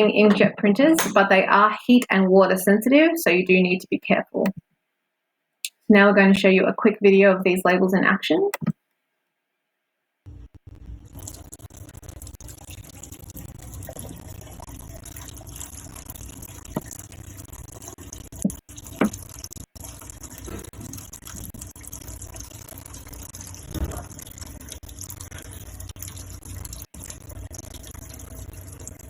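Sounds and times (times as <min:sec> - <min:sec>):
running splashing water: 0:11.1 - 0:29.0.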